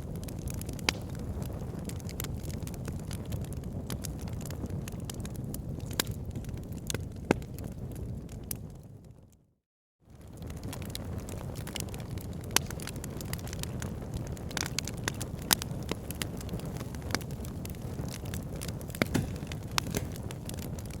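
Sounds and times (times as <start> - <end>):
fire rumbling: 0.0 - 9.4, 10.1 - 21.0
wood crackling and popping: 0.0 - 9.4, 10.1 - 21.0.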